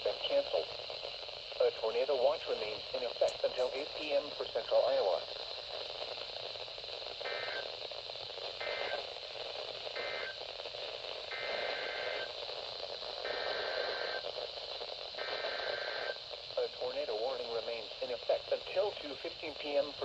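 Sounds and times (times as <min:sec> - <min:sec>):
radio static: 0:00.0 - 0:20.0
warbling digital data bursts: 0:07.2 - 0:07.8, 0:08.5 - 0:09.2, 0:09.9 - 0:10.5, 0:11.3 - 0:12.4, 0:13.2 - 0:14.4.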